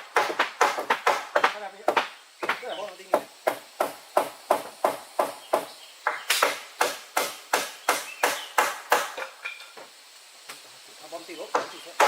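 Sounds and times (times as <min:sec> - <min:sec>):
blade chopping on wood: 0:00.0 - 0:09.4.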